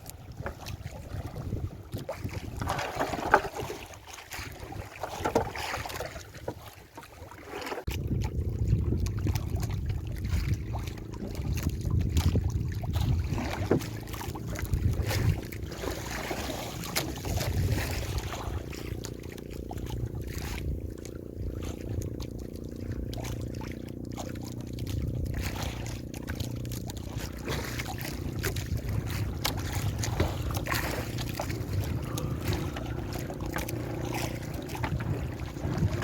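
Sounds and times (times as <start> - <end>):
wind buffeting microphone: 0.0 - 6.1, 7.9 - 36.0
water splashing against boat: 0.0 - 36.0
heavy low rumble: 28.2 - 36.0.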